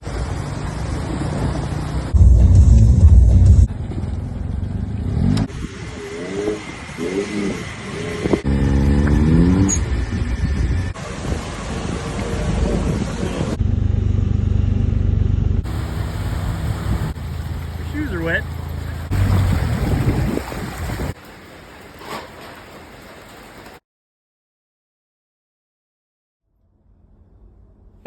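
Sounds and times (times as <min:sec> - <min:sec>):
car engines revving: 0:00.0 - 0:20.9.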